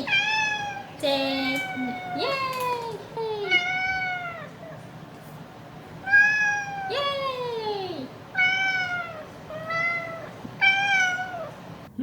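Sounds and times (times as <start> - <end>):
cat meowing: 0.0 - 4.8, 6.0 - 7.1, 8.3 - 11.6.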